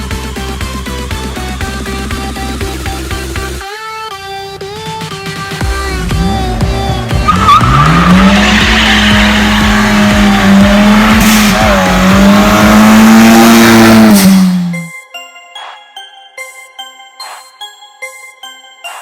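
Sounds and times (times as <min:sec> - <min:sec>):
car engine revving: 0:05.8 - 0:14.9.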